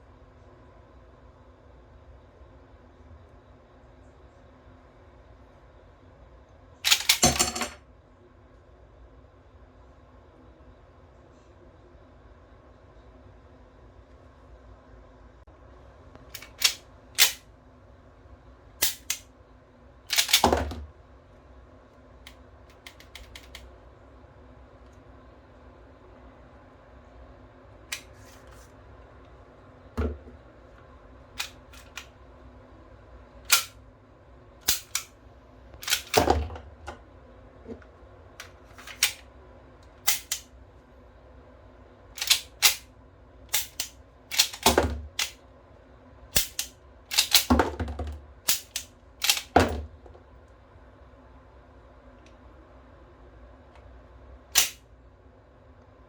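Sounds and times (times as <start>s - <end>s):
toy pistol clicking: 16.4s - 17.4s, 18.8s - 19.2s, 20.1s - 20.4s, 22.7s - 23.6s, 33.5s - 33.8s, 34.6s - 35.1s, 35.8s - 36.2s, 40.1s - 40.5s, 42.2s - 42.8s, 43.5s - 45.4s, 46.4s - 47.5s, 48.5s - 49.5s, 54.6s - 54.8s.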